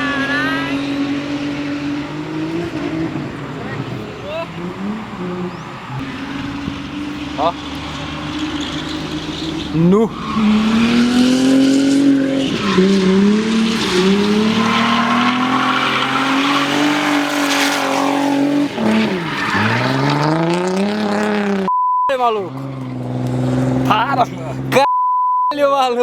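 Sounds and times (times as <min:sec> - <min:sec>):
car engine revving high: 0:00.0 - 0:24.9
tyres squealing: 0:00.0 - 0:24.9.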